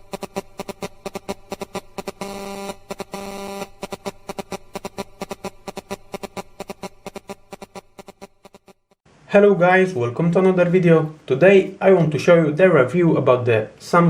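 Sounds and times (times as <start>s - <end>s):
electronic music ticking beat: 0.0s - 8.7s.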